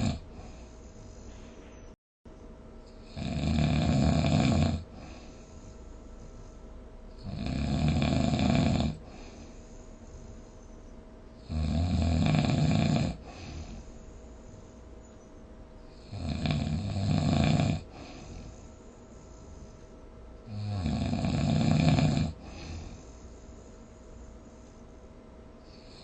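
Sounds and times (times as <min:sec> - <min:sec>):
person snoring: 0:00.0 - 0:00.7, 0:03.0 - 0:05.6, 0:07.2 - 0:09.5, 0:11.4 - 0:13.9, 0:15.9 - 0:18.7, 0:20.5 - 0:23.2
quiet breathing: 0:00.0 - 0:02.0, 0:04.3 - 0:11.8, 0:12.5 - 0:26.0.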